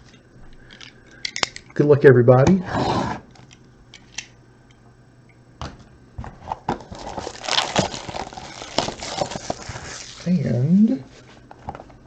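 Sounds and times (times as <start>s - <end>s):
plastic wrapping crinkling: 6.5s - 12.0s.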